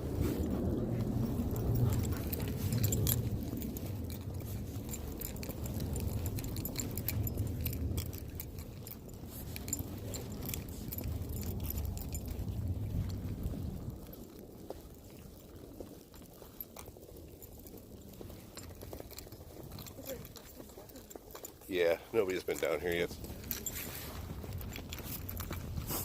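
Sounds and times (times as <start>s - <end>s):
wind on microphone: 0.0s - 15.6s
light jingling and clicking: 0.0s - 26.0s.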